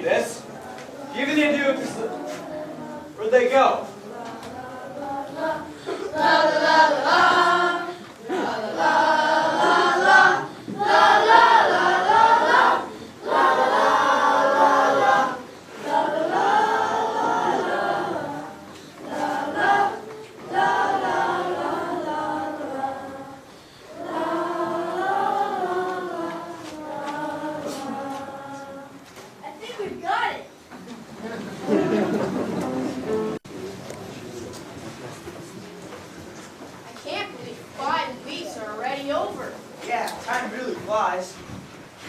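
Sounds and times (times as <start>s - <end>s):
young voices singing together: 0.0s - 33.4s.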